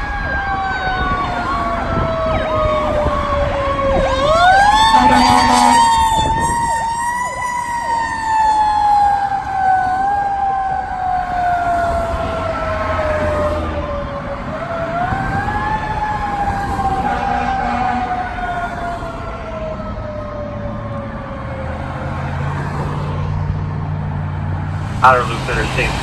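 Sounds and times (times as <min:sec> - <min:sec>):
electronic siren cycling: 0:00.0 - 0:13.7
short horn blast: 0:04.9 - 0:05.9.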